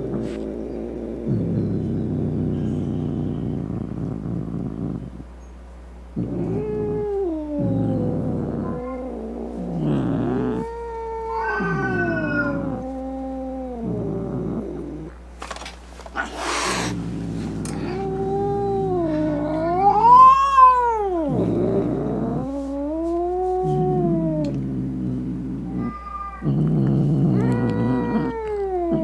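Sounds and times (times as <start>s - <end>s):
cat yowling: 6.3s - 14.0s, 17.6s - 24.6s, 25.6s - 29.0s.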